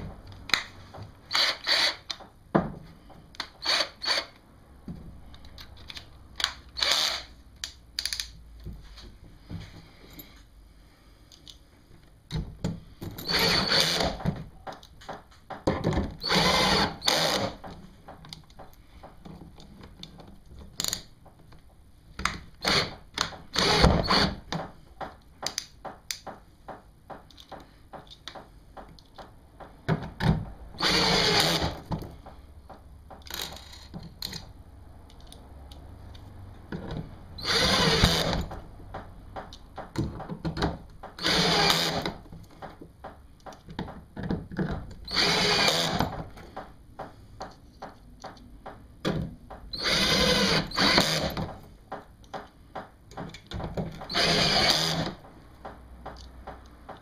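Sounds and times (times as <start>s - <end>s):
power drill running: 1.3s - 2.0s, 3.6s - 4.3s, 6.8s - 7.3s, 13.2s - 14.2s, 16.2s - 17.6s, 30.8s - 31.8s, 37.4s - 38.4s, 41.2s - 42.1s, 45.1s - 46.0s, 49.8s - 51.4s, 54.1s - 55.2s
handling clicks and knocks: 38.5s - 41.2s, 42.3s - 45.0s, 51.3s - 54.1s.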